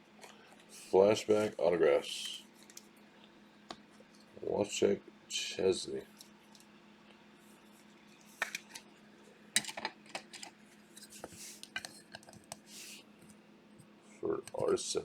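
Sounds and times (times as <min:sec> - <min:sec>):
faint steady hum: 0:00.0 - 0:15.0
cards sliding softly: 0:00.6 - 0:01.6, 0:10.9 - 0:11.9, 0:12.5 - 0:13.3.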